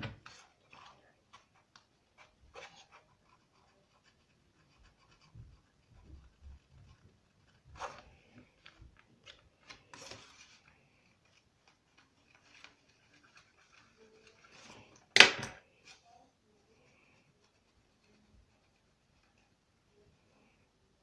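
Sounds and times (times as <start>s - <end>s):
paper rustling: 0.0s - 16.0s.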